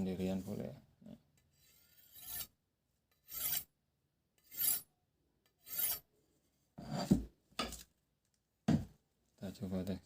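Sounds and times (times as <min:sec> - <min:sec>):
blade rasping on sharpener: 0:01.5 - 0:02.6, 0:03.2 - 0:03.7, 0:04.4 - 0:04.9, 0:05.6 - 0:06.1.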